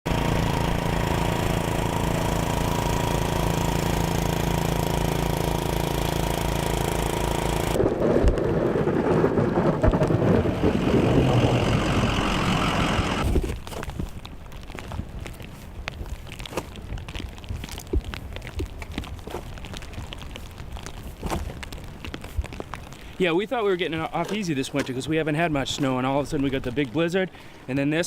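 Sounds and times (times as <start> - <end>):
engine running: 0.1 - 7.9, 9.8 - 13.5.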